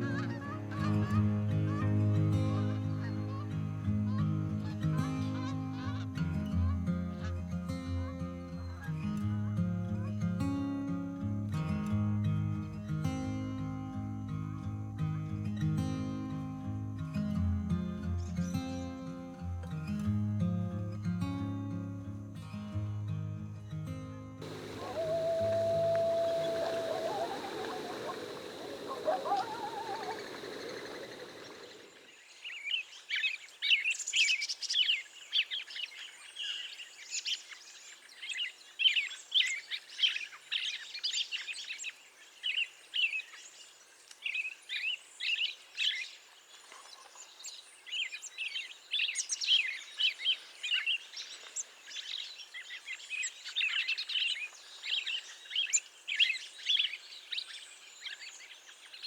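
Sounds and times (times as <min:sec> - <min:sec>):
music: 0:00.0 - 0:26.6
songbirds chirping and singing: 0:24.4 - 0:32.8.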